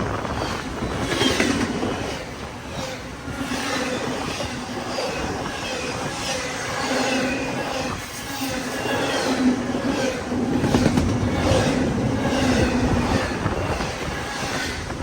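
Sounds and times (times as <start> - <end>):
train wheels clattering over rails: 0.0 - 15.0.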